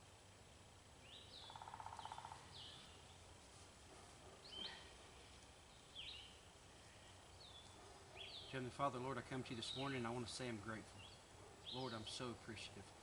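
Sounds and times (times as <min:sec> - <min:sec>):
faint songbirds calling: 0:00.9 - 0:03.4, 0:04.1 - 0:12.9
rapid low bird trill: 0:01.0 - 0:03.2, 0:04.4 - 0:12.4.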